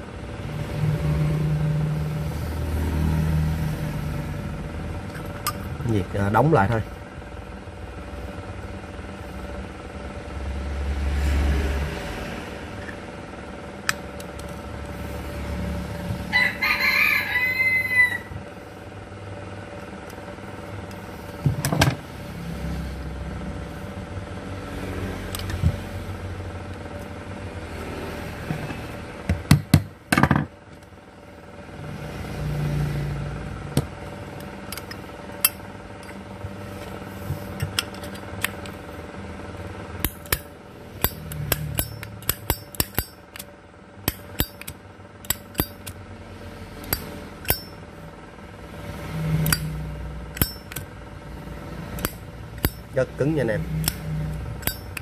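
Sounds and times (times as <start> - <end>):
low steady hum: 0.0 - 55.0
rooster crowing: 16.2 - 18.4.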